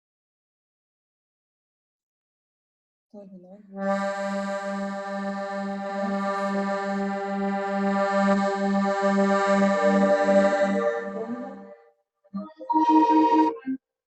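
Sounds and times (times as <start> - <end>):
accordion playing: 3.8 - 11.8, 12.4 - 13.7.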